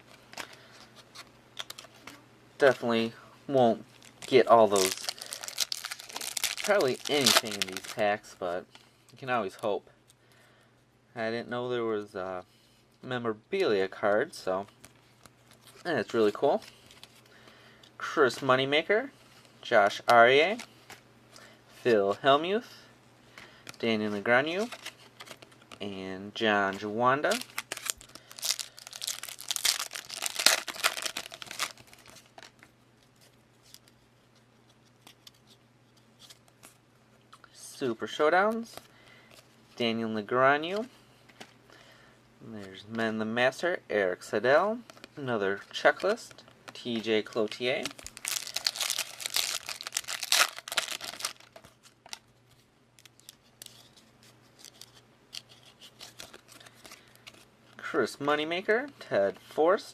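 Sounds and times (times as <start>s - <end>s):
card pack wrapper crinkling: 3.6s - 8.3s, 23.7s - 26.0s, 26.6s - 33.9s, 44.7s - 57.5s
cards being handled: 3.7s - 9.6s, 23.6s - 26.0s, 26.6s - 36.8s, 44.7s - 57.8s.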